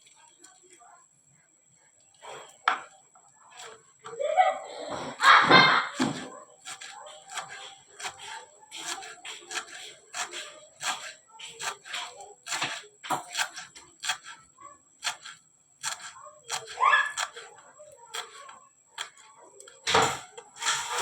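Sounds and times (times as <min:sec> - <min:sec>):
knife chopping on cutting board: 0:05.2 - 0:14.4, 0:15.0 - 0:17.5.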